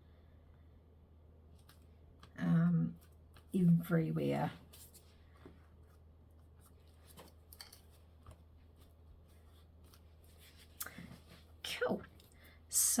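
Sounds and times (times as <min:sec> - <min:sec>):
low steady hum: 0:00.0 - 0:13.0
paper and card rustling: 0:04.5 - 0:11.6.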